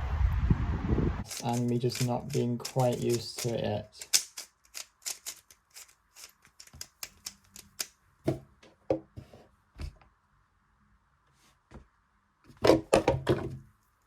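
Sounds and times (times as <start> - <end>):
puzzle cube clicking and snapping: 1.2 - 8.0.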